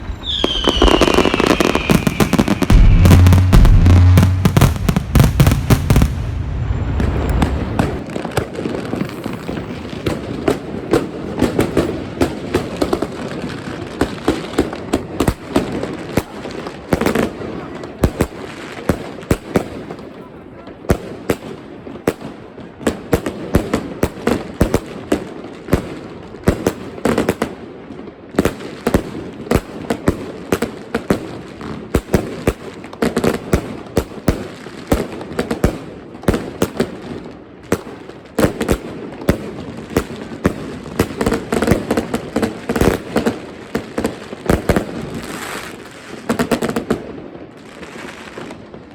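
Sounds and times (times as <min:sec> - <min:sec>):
fireworks shots and bursts: 0:00.0 - 0:20.1, 0:20.7 - 0:48.9.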